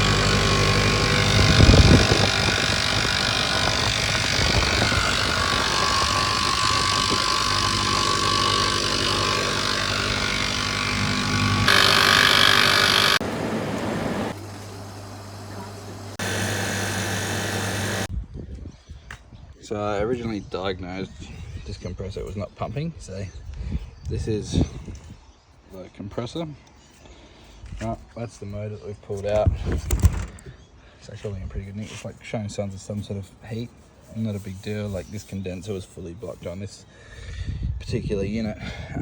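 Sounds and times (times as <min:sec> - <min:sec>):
refrigeration compressor humming: 0:00.0 - 0:18.1.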